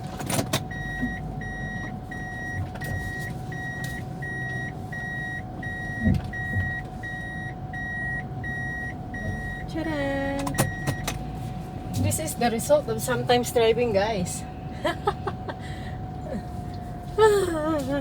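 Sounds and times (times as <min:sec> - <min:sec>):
car alarm beeping: 0:00.0 - 0:11.4.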